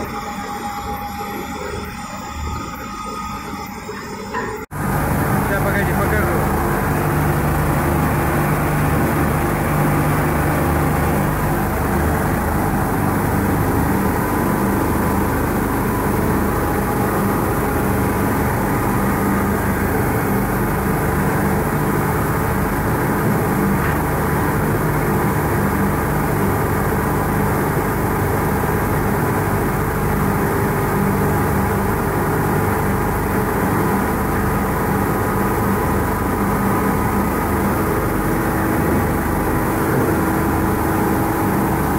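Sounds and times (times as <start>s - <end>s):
sanding machine droning: 4.7s - 27.5s.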